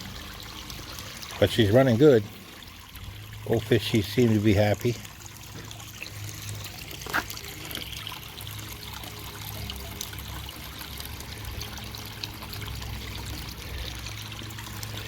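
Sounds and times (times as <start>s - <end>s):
waterfall splashing into pond: 0.0s - 15.0s.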